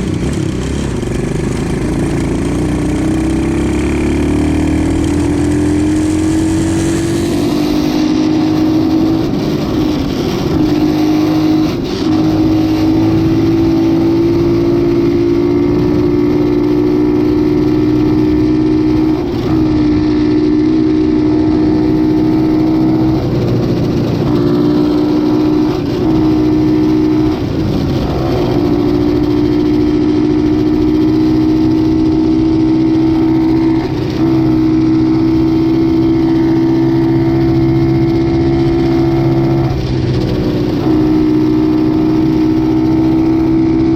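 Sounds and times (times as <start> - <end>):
pocket bike engine whining: 0.0 - 7.5.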